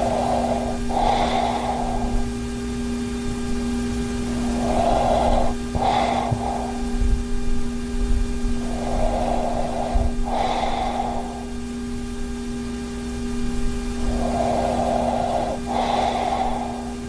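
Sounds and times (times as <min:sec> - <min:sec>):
man snoring: 0:00.0 - 0:02.4, 0:04.3 - 0:07.0, 0:08.6 - 0:11.6, 0:14.0 - 0:17.0
steady hum: 0:00.0 - 0:17.0.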